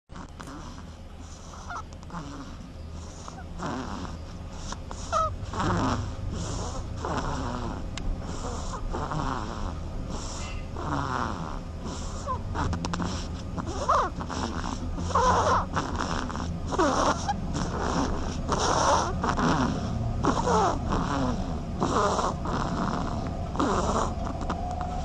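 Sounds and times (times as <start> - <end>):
steady low hum: 0.1 - 25.0
duck snoring: 0.2 - 25.0.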